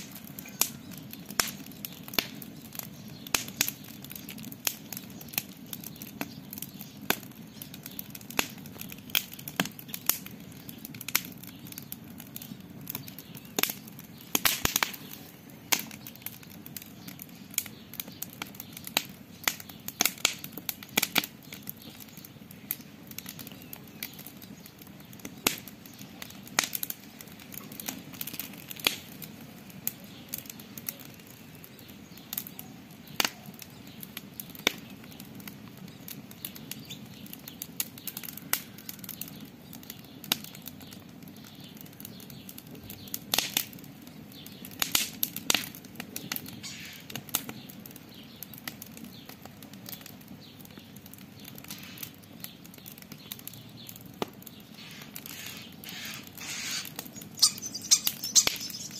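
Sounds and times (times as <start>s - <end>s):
low rush of burning: 0.0s - 39.8s, 52.7s - 58.9s
campfire crackling and popping: 0.0s - 58.9s.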